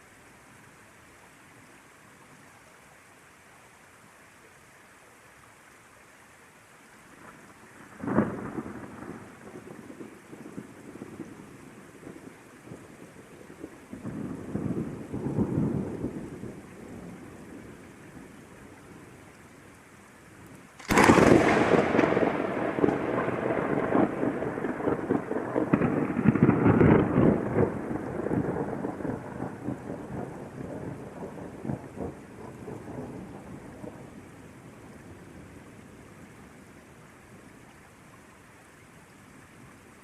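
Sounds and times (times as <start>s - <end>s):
steady rain: 0.0s - 40.0s
thunder rumbling: 7.8s - 18.4s, 20.8s - 35.5s
close thunderclap: 20.8s - 34.1s.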